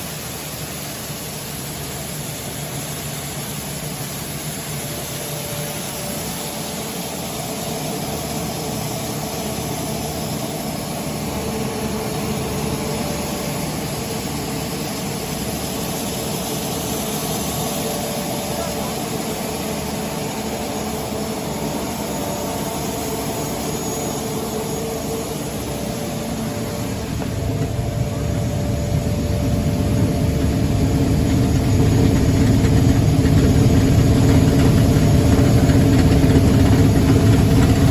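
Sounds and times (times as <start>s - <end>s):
milling machinery hum: 0.0s - 37.9s
low rumble: 24.2s - 33.3s.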